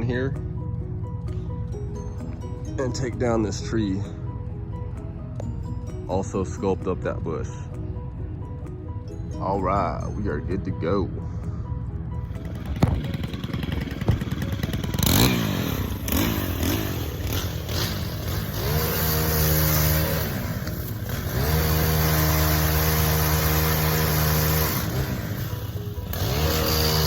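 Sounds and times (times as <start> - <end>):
two-stroke engine revving: 12.2 - 27.0.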